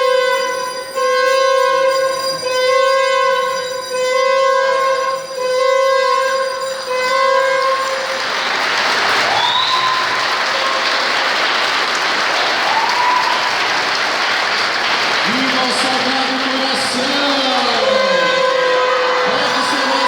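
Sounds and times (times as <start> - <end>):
crowd applause: 6.6 - 20.0
rising cheers or whistles: 7.8 - 20.0.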